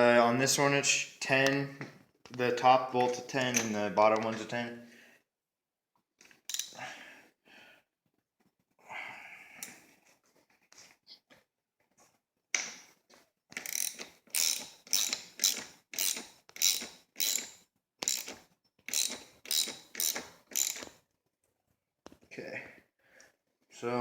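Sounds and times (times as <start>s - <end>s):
ratchet wrench clicking: 6.5s - 6.7s, 13.6s - 21.0s.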